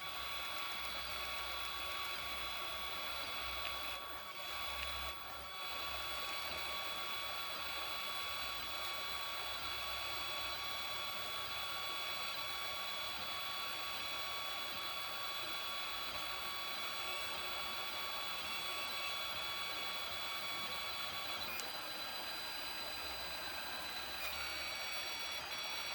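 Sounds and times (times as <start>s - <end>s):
stepper motors whining: 16.9s - 25.9s.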